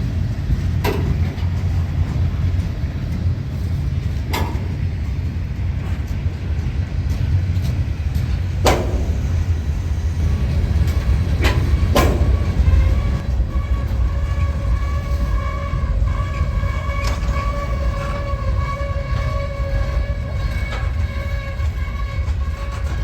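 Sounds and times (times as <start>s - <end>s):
train rumbling: 0.0s - 23.0s
train air horn chord: 11.4s - 22.8s.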